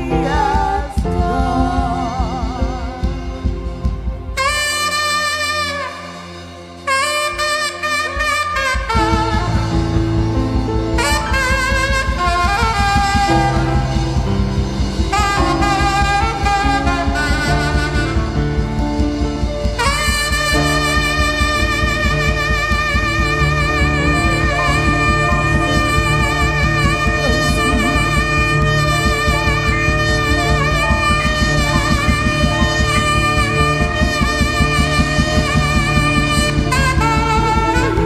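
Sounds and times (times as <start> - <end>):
saxophone-like melody: 0.0 - 38.0
bass and drums beat: 8.6 - 38.0.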